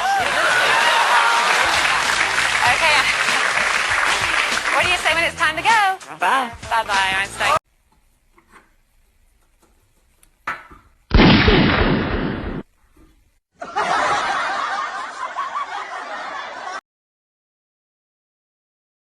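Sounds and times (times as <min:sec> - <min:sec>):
loud boom: 0:11.1 - 0:12.6
laughter: 0:13.6 - 0:16.8.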